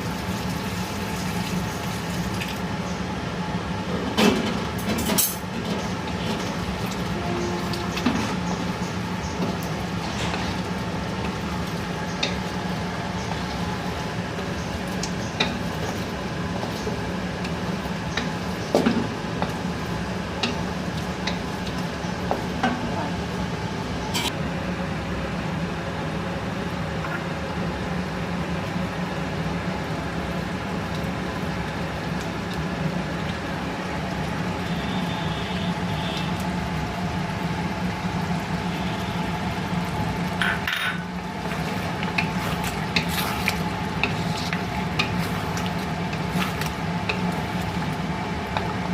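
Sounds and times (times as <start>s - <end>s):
gravy sizzling in a pan: 0.0s - 2.8s, 41.0s - 48.9s.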